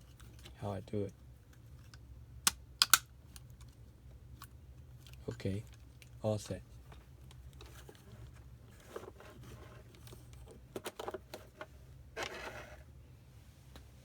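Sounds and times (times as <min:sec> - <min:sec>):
plastic device clicks: 0:02.5 - 0:03.1.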